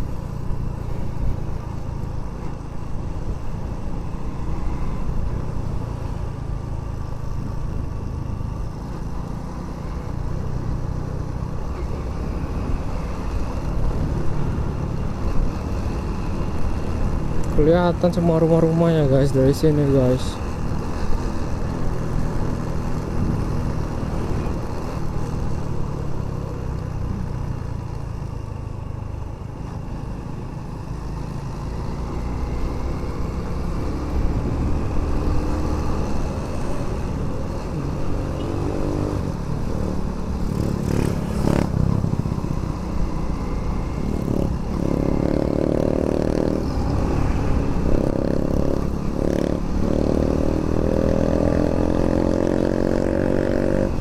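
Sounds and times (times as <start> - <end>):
motorcycle engine running: 0.0 - 54.0
wind and road rush: 0.0 - 54.0.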